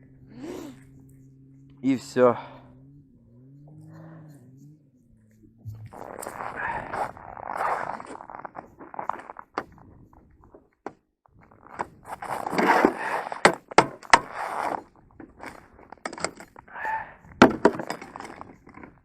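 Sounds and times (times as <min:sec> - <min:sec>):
scraping and crunching on ice: 0:05.9 - 0:09.8, 0:11.5 - 0:16.9, 0:17.5 - 0:19.0
sharp clicks and knocks: 0:11.7 - 0:16.7, 0:17.4 - 0:19.0.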